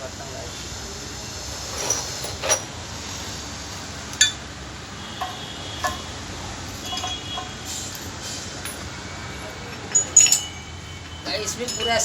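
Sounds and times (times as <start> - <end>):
metal parts clinking together: 1.6 - 2.7, 4.2 - 4.4, 5.2 - 6.1, 6.8 - 8.9, 9.7 - 10.6.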